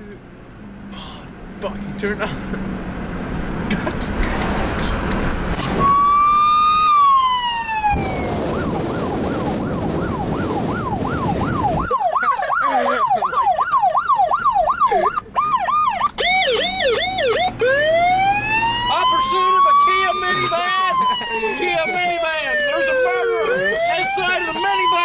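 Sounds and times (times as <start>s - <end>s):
car and road noise: 0.0s - 25.0s
electronic police siren: 5.8s - 25.0s.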